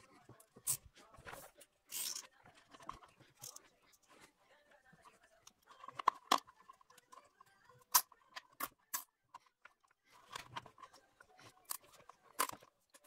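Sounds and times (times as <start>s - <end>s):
tools clicking and knocking: 5.4s - 13.0s.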